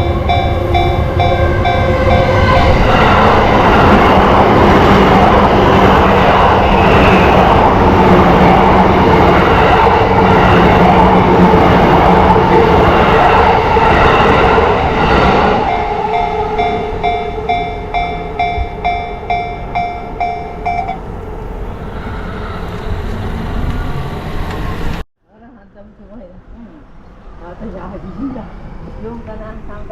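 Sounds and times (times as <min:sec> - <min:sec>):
level crossing bell ringing: 0:00.0 - 0:02.8, 0:15.7 - 0:21.0
train rumbling past: 0:00.0 - 0:29.9.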